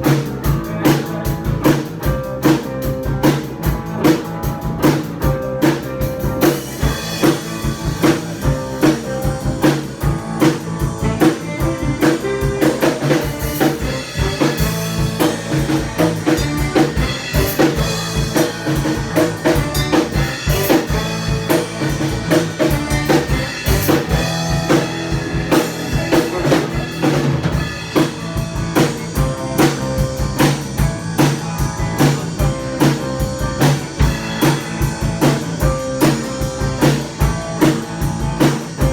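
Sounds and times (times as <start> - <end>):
drum kit beat: 0.0 - 38.9
pitched instruments: 6.9 - 30.5.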